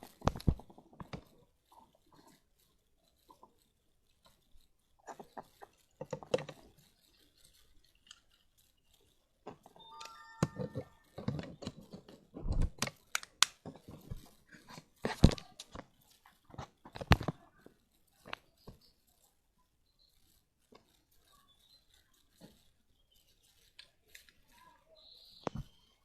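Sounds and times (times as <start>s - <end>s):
packaging crinkling and tearing: 5.0s - 17.5s.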